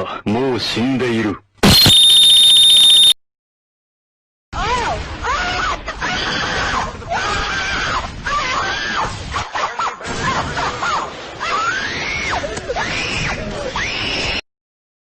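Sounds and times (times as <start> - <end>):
high-pitched screeching cries: 1.6 - 3.1.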